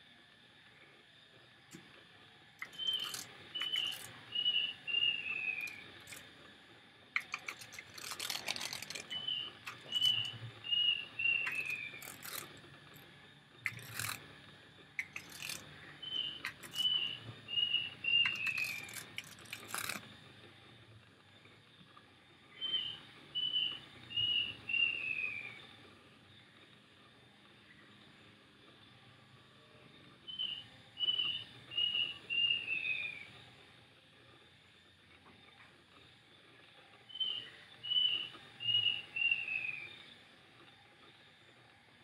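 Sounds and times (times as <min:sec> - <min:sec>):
faint steady hiss: 0:00.0 - 0:42.0
bird whistling: 0:02.6 - 0:05.9, 0:07.9 - 0:12.5, 0:15.0 - 0:19.1, 0:22.6 - 0:25.6, 0:30.3 - 0:33.3, 0:37.1 - 0:40.0.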